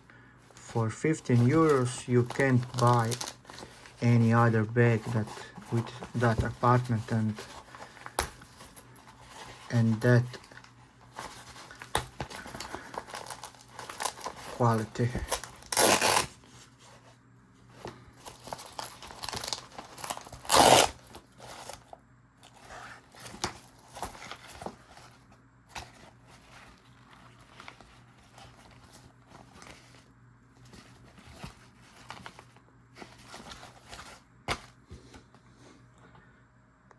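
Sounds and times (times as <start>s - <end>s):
fabric pouch rustling: 0.5s - 35.4s.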